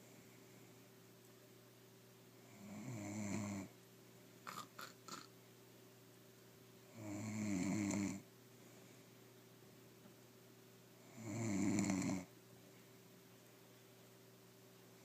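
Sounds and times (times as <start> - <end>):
woman snoring: 2.6 - 3.7, 4.5 - 5.3, 7.0 - 8.2, 11.1 - 12.3.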